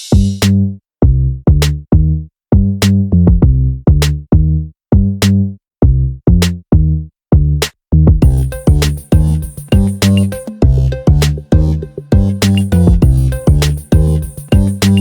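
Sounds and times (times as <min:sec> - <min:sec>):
high percussion: 0:00.0 - 0:00.5, 0:08.2 - 0:15.0
drum machine beat with bass: 0:00.0 - 0:15.0.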